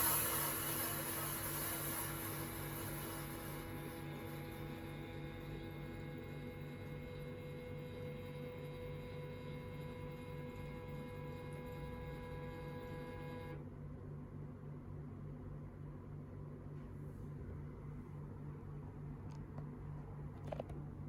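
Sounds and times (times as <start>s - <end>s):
hiss: 0.0s - 3.8s
steady high tones: 0.0s - 13.0s
steady low hum: 0.0s - 21.0s.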